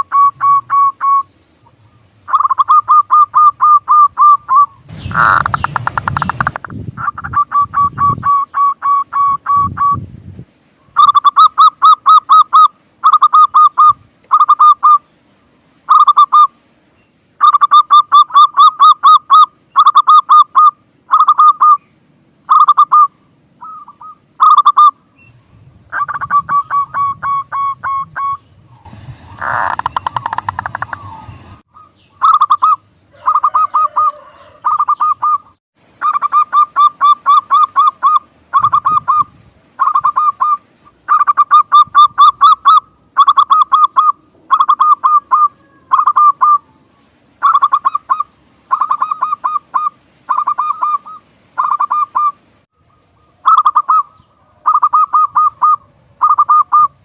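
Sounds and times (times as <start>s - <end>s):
dove cooing: 0.0s - 10.0s, 11.0s - 15.0s, 25.9s - 28.4s, 29.4s - 57.0s
noisy burst with low rumble: 28.4s - 31.7s.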